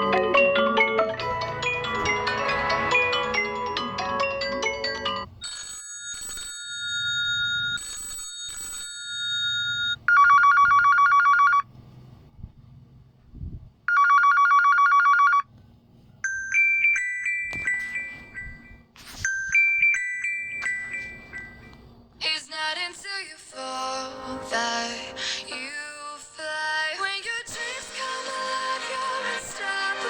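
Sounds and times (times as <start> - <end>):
electronic ringtone chime: 0.0 - 11.6, 16.3 - 21.7
telephone ringing: 0.0 - 11.6, 13.9 - 15.5, 16.3 - 21.8.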